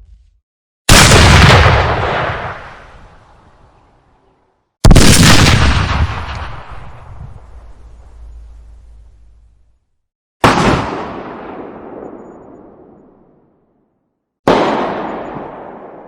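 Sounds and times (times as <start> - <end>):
gunshots echoing: 0.9 - 3.4, 4.8 - 7.2, 10.4 - 13.5, 14.5 - 16.0.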